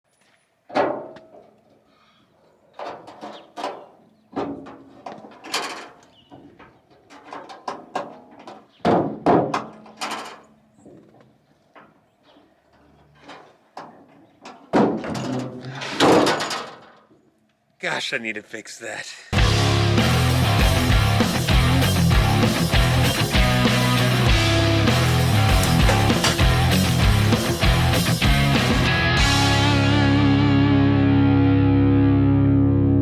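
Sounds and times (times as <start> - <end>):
tailgate metal clunks and bangs: 7.2 - 10.4, 25.4 - 26.6
latch clicks: 25.5 - 26.6.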